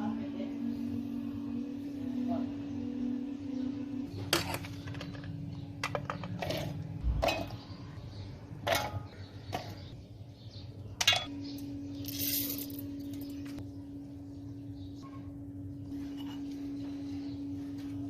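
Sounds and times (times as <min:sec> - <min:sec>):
steady low hum: 0:00.0 - 0:18.0
utensils clinking against dishes: 0:04.3 - 0:07.6, 0:08.6 - 0:09.9, 0:11.0 - 0:11.3.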